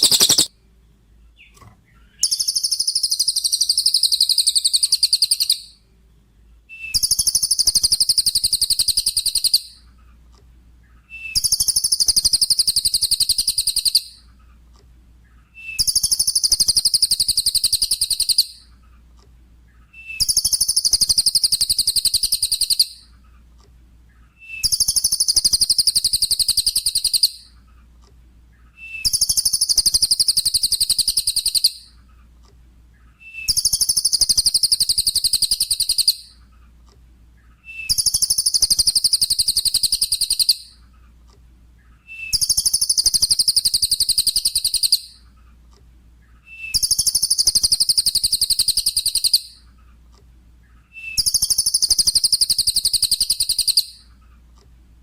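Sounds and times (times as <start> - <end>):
songbird high rapid trill: 0.0 - 0.5
faint low hum: 0.0 - 31.1, 31.7 - 44.0, 45.0 - 48.5, 49.4 - 52.1, 53.9 - 55.0.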